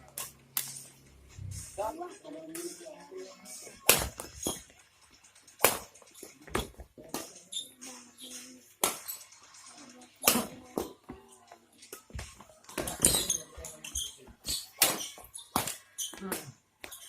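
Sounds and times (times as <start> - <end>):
rackets striking shuttlecock: 0.1 - 1.0, 3.7 - 4.8, 5.4 - 9.3, 10.2 - 11.2, 11.9 - 17.0.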